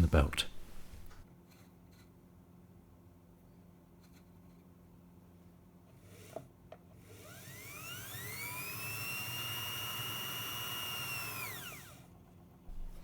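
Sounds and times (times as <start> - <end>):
sewing machine motor whine: 7.0 - 12.1.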